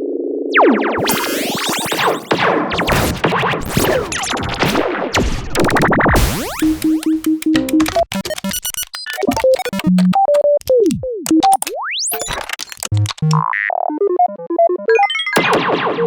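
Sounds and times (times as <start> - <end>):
swooping pitch glides: 0.5 - 2.4
falling synth sweep: 0.5 - 3.0
noisy electronic zaps: 0.6 - 8.6.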